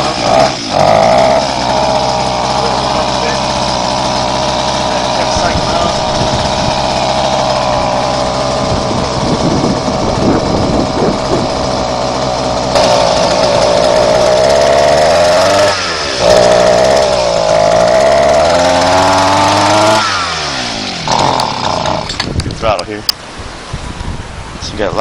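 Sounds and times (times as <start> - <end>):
small engine revving: 0.0 - 22.6.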